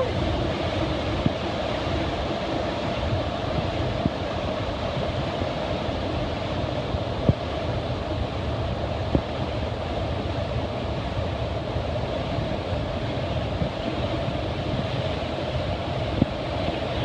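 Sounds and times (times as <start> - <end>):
waterfall rushing: 0.0 - 0.3.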